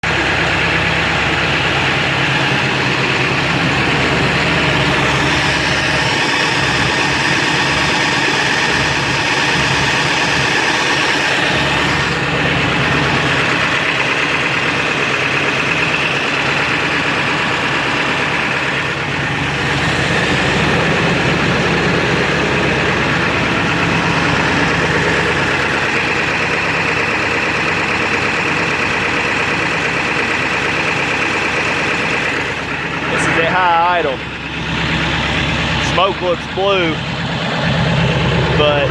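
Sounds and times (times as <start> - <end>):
diesel engine idling: 0.0 - 38.9.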